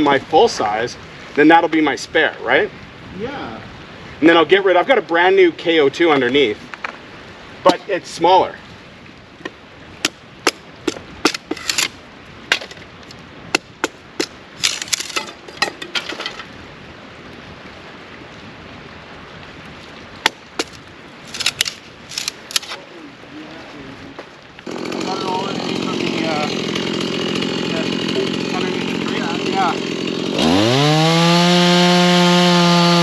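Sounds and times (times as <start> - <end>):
wood cracking and snapping: 9.4 - 16.5, 20.2 - 22.8.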